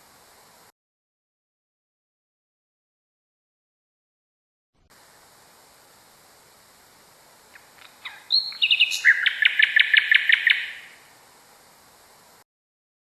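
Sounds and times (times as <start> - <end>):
recording hiss: 0.0 - 0.7, 4.9 - 12.4
nightingale singing: 7.5 - 11.1.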